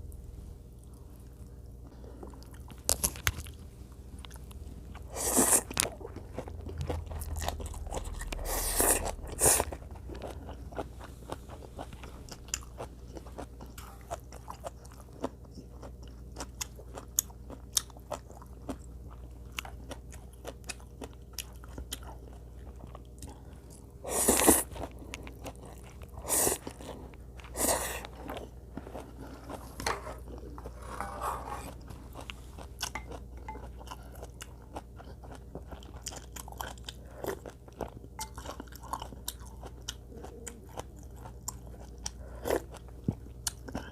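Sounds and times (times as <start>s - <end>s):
chewing with crunching bites: 0.8s - 43.9s.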